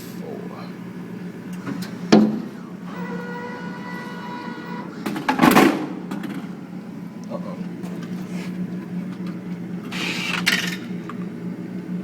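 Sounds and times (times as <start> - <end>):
vending machine hum: 0.0 - 12.0
motor whine: 0.8 - 12.0.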